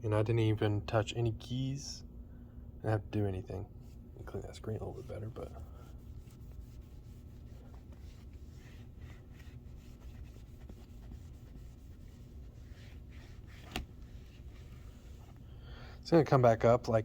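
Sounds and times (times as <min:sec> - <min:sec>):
rag rubbing on a screen: 0:03.8 - 0:15.4.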